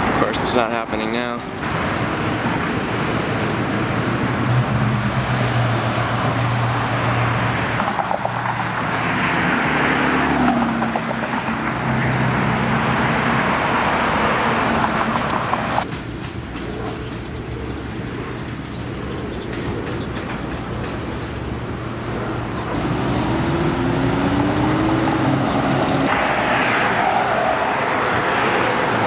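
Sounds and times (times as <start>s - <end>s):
vehicles passing with tyre noise: 0.0s - 29.0s.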